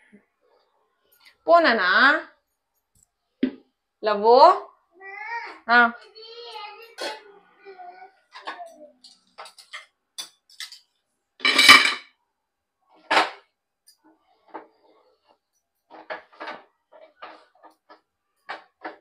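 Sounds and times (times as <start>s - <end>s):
dishes clinking and knocking: 6.8s - 7.2s, 8.3s - 12.1s, 15.9s - 19.0s
dishes clattering: 6.9s - 7.2s, 8.3s - 12.1s.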